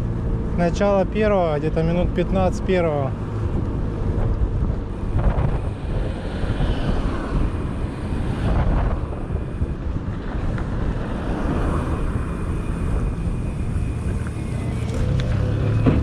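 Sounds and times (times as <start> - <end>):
wind buffeting microphone: 3.3 - 15.8.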